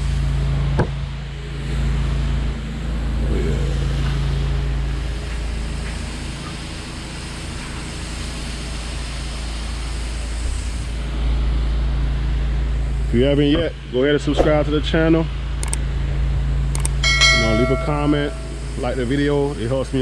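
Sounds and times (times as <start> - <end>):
pressure washer engine running: 2.2 - 13.9, 15.3 - 20.0
high-pressure water spraying: 3.6 - 13.3, 16.7 - 20.0
sharp click: 15.6 - 15.8, 16.7 - 18.4.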